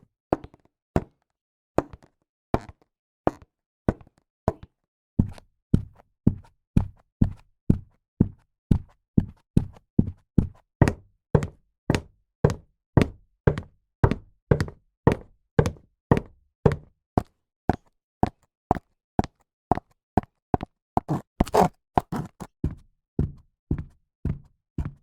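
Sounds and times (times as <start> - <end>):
high-heeled footsteps clicking: 10.8 - 16.8.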